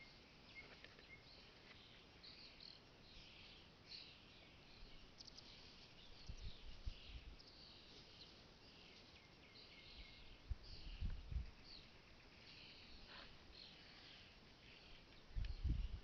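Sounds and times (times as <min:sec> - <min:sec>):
small birds chirping: 0:00.0 - 0:16.0
low wind rumble on microphone: 0:06.0 - 0:07.4, 0:10.0 - 0:11.8, 0:15.2 - 0:16.0.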